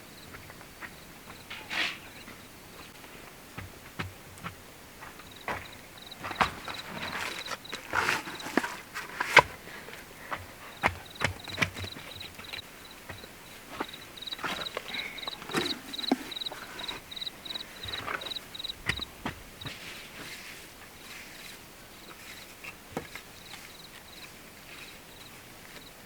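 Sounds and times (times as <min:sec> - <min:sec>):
insect chirping: 0:05.2 - 0:08.8, 0:10.7 - 0:19.2, 0:23.4 - 0:26.0
rustling: 0:05.6 - 0:25.9.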